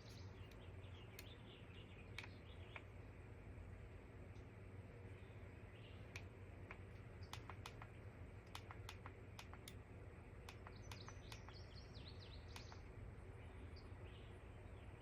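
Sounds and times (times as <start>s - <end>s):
light clicks: 0.0s - 1.4s, 2.0s - 2.9s, 6.1s - 9.8s, 10.4s - 12.9s
faint high bird chirps: 0.0s - 3.0s, 10.3s - 15.0s
faint room hum: 0.0s - 15.0s.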